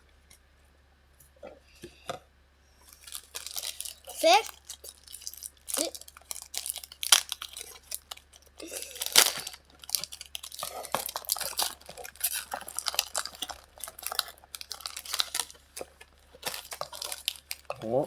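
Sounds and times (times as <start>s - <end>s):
foil packs crinkling and tearing: 2.8s - 18.0s.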